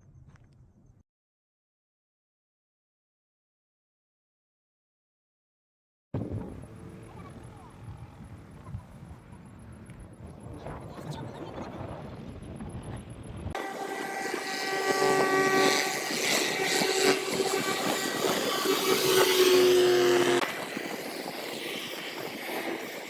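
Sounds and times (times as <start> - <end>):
machine drone with whine: 6.2 - 23.0.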